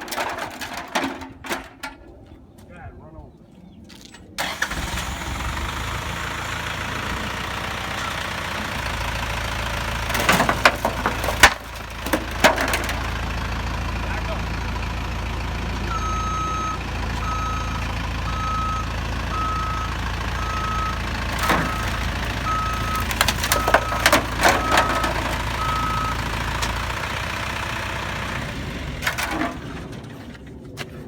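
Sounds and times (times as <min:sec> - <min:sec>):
plastic pan cracking under tyres: 0:00.0 - 0:02.0, 0:09.5 - 0:13.3, 0:21.2 - 0:27.0
vehicle engine rumble: 0:04.3 - 0:31.0
reversing alarm beeping: 0:15.9 - 0:26.6.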